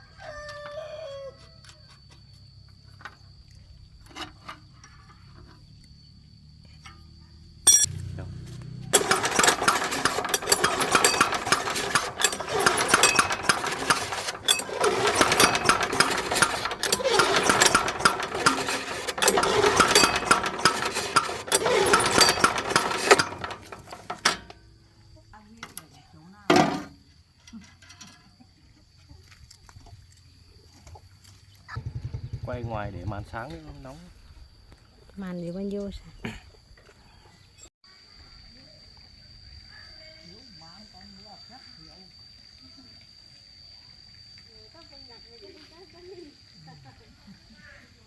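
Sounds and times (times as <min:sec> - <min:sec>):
diesel engine starting and running: 0:07.6 - 0:24.8.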